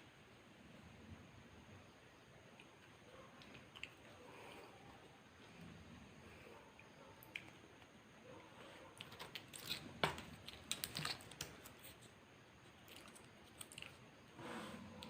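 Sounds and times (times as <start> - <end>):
eating clicks and crackles: 2.4 - 5.2, 6.7 - 8.0, 8.9 - 14.2.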